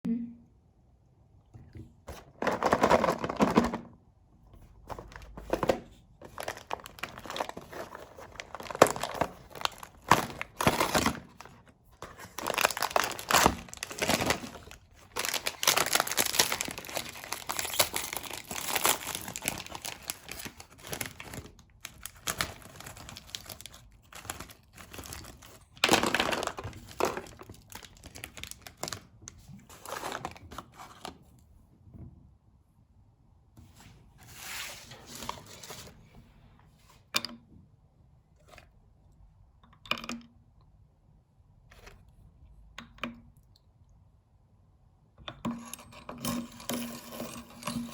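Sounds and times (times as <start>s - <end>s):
plastic packaging crinkling and tearing: 2.3s - 3.9s, 4.9s - 30.8s.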